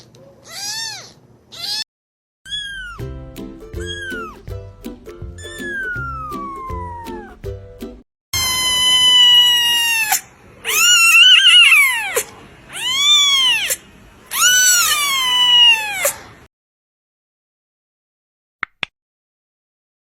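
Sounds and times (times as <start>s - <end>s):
kitten meowing: 0.0s - 1.8s, 2.5s - 3.1s, 3.8s - 4.4s, 5.4s - 7.4s, 8.4s - 16.2s.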